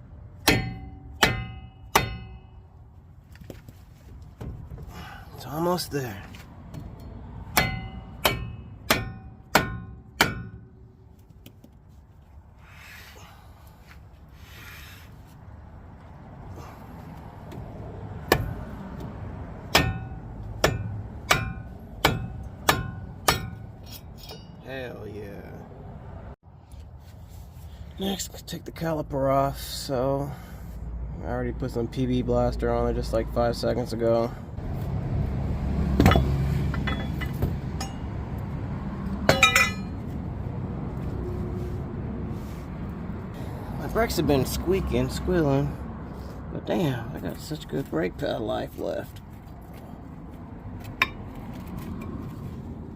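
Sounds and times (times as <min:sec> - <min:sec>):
metal tools clinking: 0:23.4 - 0:24.6, 0:36.1 - 0:38.1, 0:39.3 - 0:40.0.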